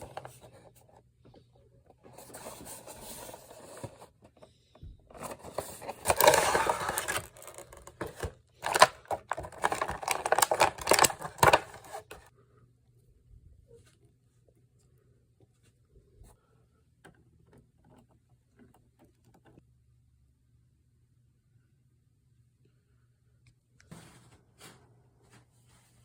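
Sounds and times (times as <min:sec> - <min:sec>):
cardboard and plastic rustling: 0:00.0 - 0:00.9, 0:02.0 - 0:04.4, 0:05.1 - 0:12.3.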